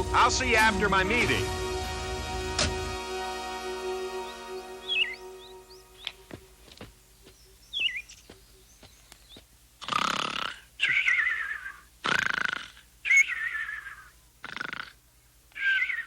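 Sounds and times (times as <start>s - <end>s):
cartoon snoring with whistle: 14.4s - 15.0s.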